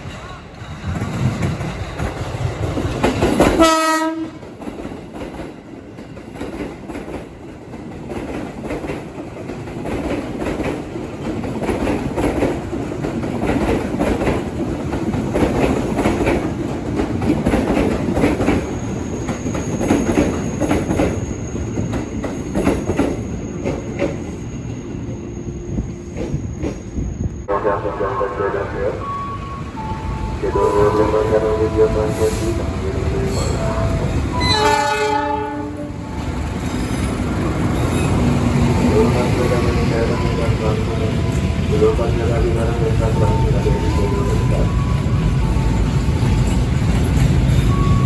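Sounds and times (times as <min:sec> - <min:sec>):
train wheels clattering over rails: 0:00.0 - 0:25.1, 0:36.1 - 0:48.0
train horn blast: 0:03.6 - 0:04.4, 0:27.5 - 0:29.2, 0:30.4 - 0:36.3.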